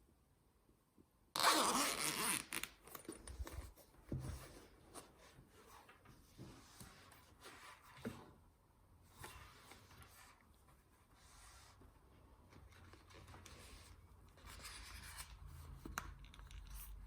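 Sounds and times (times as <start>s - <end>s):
zip pulled open: 1.4s - 2.9s.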